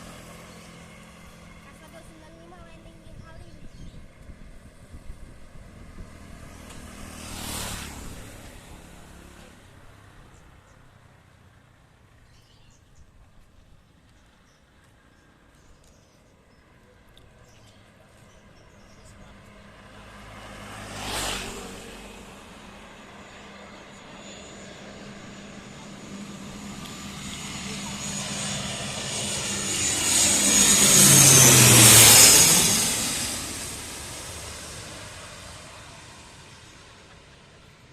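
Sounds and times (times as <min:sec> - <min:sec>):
vehicle passing by: 0:00.0 - 0:11.6, 0:17.1 - 0:37.9
propeller drone: 0:00.0 - 0:37.9
high turbine whine: 0:21.6 - 0:37.9.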